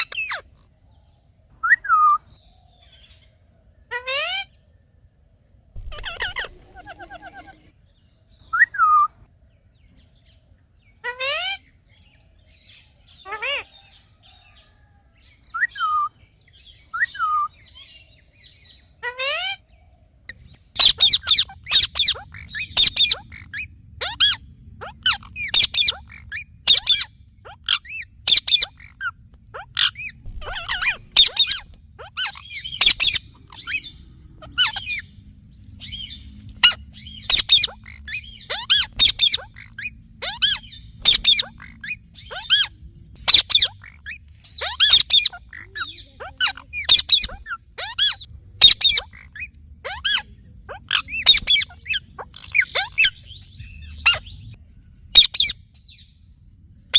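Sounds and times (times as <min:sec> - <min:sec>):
parakeet calling: 0:00.0 - 0:00.6, 0:05.8 - 0:07.7, 0:20.3 - 0:56.1.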